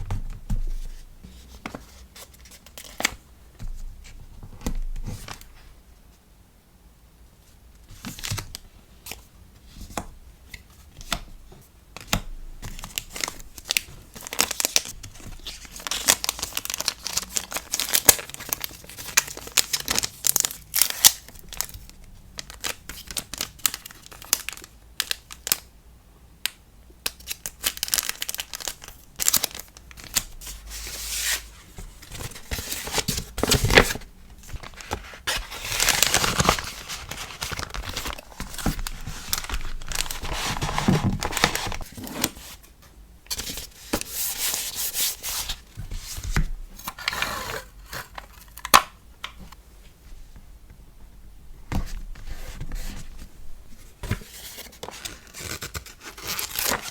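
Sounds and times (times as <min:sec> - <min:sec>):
packaging rustling and tearing: 0:12.7 - 0:25.6, 0:27.3 - 0:31.4, 0:32.0 - 0:42.6, 0:54.0 - 0:56.9.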